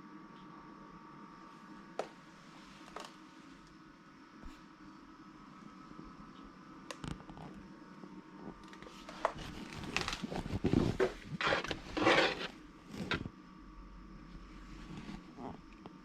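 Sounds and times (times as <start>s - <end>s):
scraping and rubbing: 8.9s - 13.3s.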